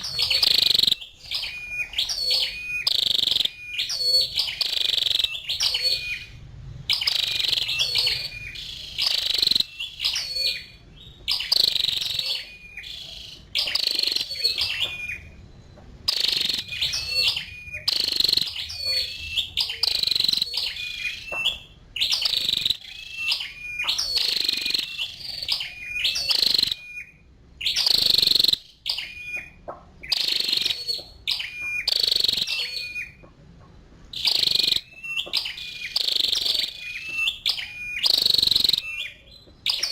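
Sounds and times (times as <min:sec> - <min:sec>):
bird sharp high chirps: 0:00.0 - 0:33.4, 0:34.1 - 0:39.9.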